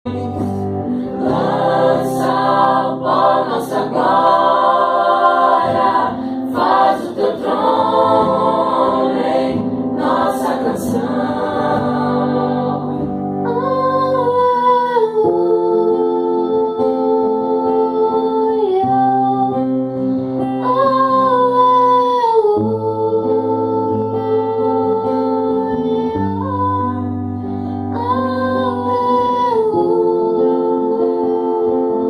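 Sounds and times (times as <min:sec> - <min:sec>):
choir singing: 0:00.1 - 0:13.8.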